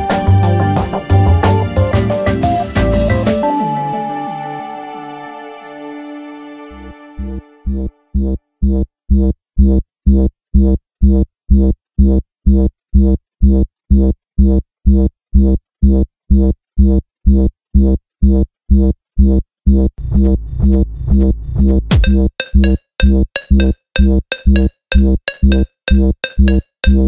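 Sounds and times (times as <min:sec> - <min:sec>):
synth bass pulse: 0:07.2 - 0:27.0.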